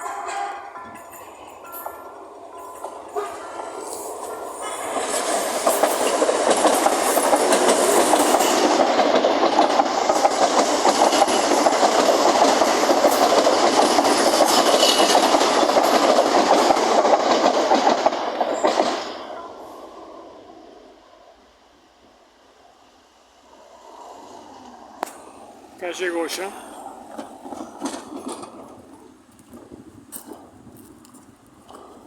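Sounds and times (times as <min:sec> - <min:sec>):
electric train passing: 0:00.0 - 0:32.0.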